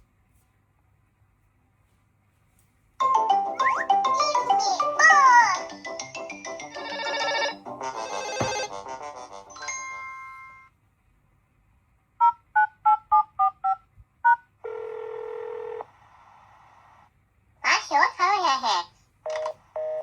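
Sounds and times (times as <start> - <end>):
smartphone ringtone melody: 3.0 - 8.9.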